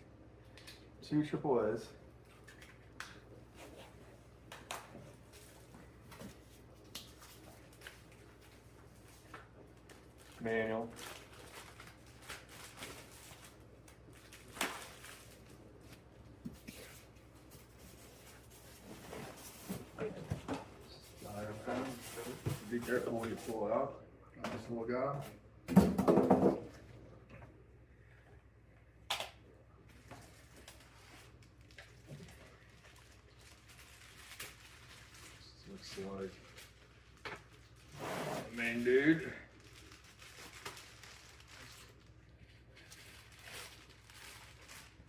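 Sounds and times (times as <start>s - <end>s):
packaging rustling: 5.2s - 19.9s, 30.3s - 37.9s, 39.0s - 45.0s.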